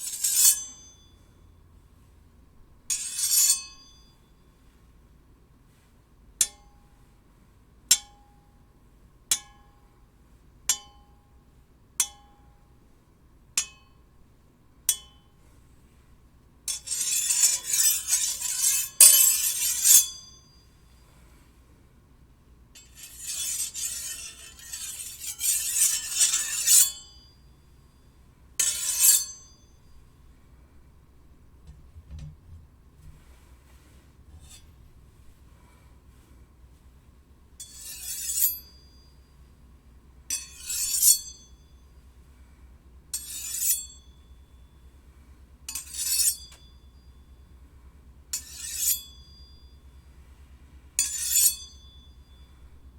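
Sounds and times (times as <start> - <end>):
blade scraping along blade: 0.0 - 0.9, 3.0 - 3.6, 16.7 - 20.3, 22.8 - 27.2, 28.6 - 29.6, 37.6 - 38.8, 40.3 - 41.4, 43.2 - 44.0, 45.7 - 46.5, 48.4 - 49.2, 51.0 - 51.8.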